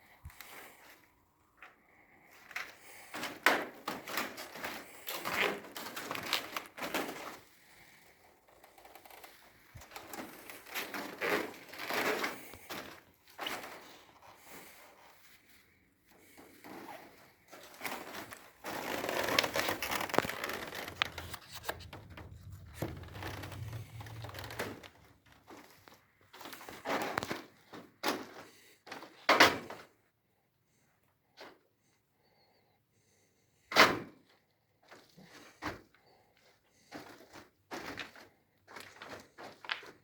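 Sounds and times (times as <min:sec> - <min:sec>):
rustling and crinkling handling: 0:00.3 - 0:28.5.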